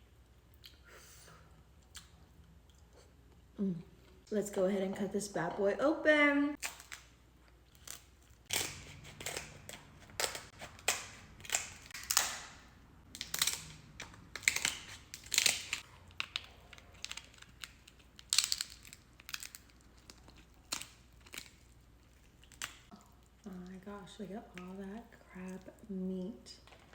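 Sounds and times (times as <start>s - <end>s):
crab shell cracking and crunching: 6.6s - 23.8s.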